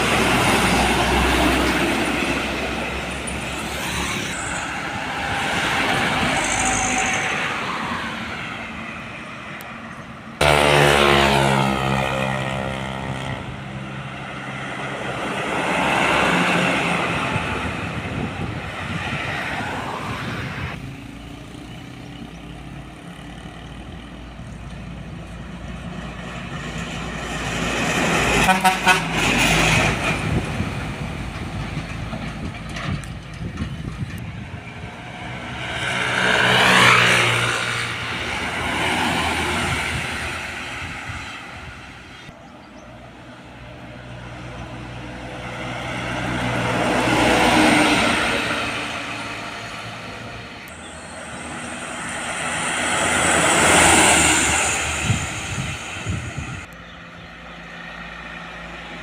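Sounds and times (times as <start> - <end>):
heavy trucks passing: 0.0 - 59.0
truck horn toots: 10.4 - 13.6, 28.3 - 29.6.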